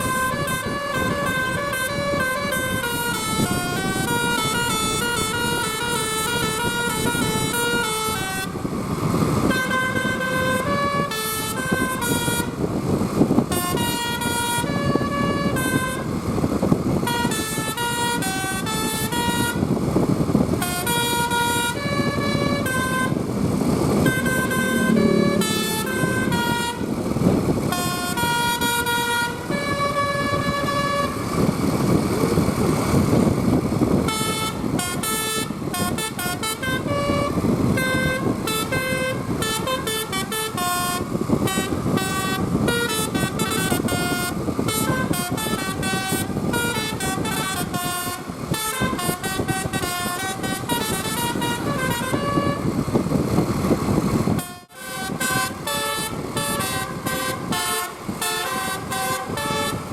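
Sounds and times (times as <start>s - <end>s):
multi-tone musical bus horn: 0.0s - 31.5s, 33.0s - 53.4s, 54.1s - 59.9s
engine and road rumble: 0.0s - 59.9s.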